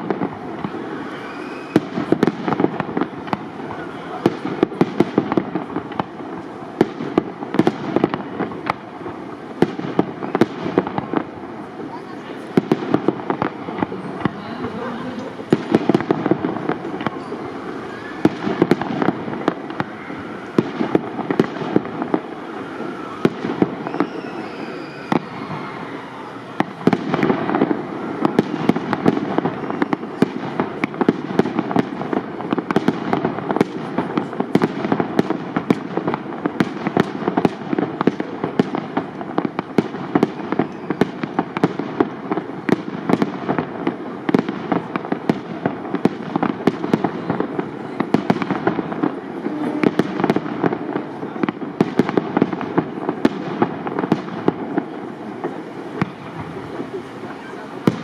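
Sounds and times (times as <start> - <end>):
fireworks bangs and crackling: 0.0 - 58.0.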